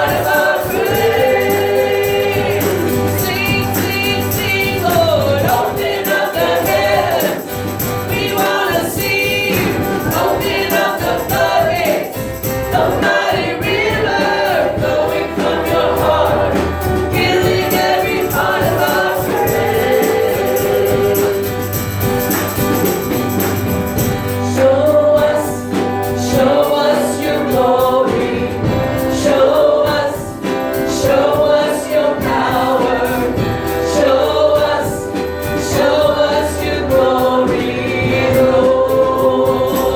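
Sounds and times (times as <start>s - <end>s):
band with low bass: 0.0s - 8.4s, 9.0s - 26.6s
drums: 0.0s - 39.9s
voices singing worship song: 0.0s - 39.9s.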